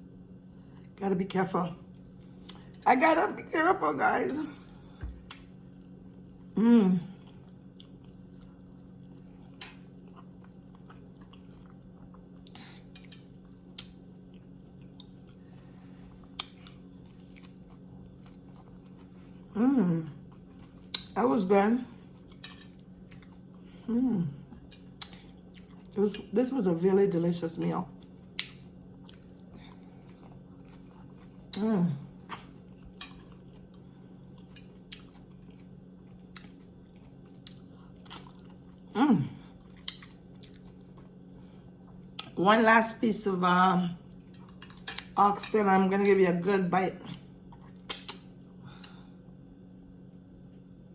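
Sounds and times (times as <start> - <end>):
steady low hum: 0.0 - 50.9
person chewing food: 4.6 - 21.2, 21.9 - 26.3, 27.9 - 42.4, 44.0 - 45.2, 47.1 - 49.6
wet mouth clicks: 47.8 - 49.0.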